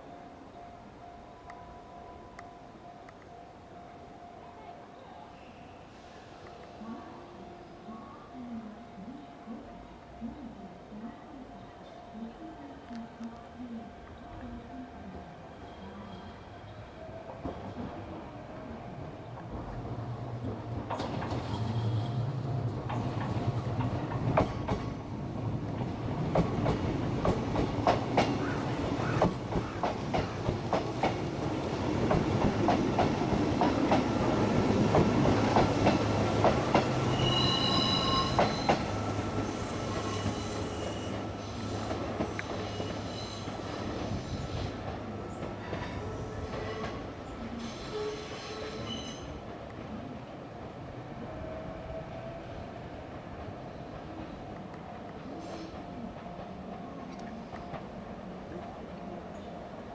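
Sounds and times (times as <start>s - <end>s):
train clacking over rail joints: 19.3s - 49.8s
high-pitched wheel squeals: 37.1s - 41.3s, 42.5s - 43.6s, 47.6s - 49.4s.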